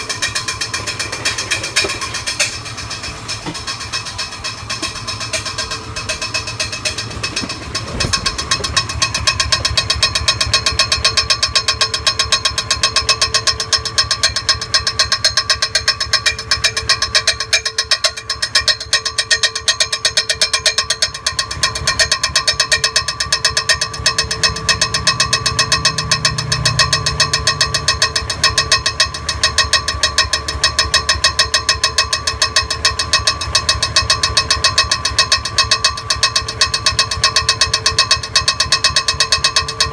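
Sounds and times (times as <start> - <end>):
rubbing noise from flywheel: 0.0 - 13.1
car engine idling roughly: 0.0 - 39.9
fast engine ticking: 0.0 - 39.9.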